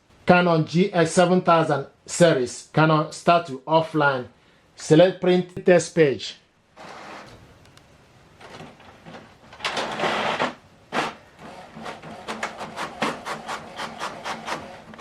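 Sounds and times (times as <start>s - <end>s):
printer feeding paper whirring: 6.8s - 7.4s, 8.4s - 15.0s
printer mechanism rapid clicking: 8.4s - 15.0s.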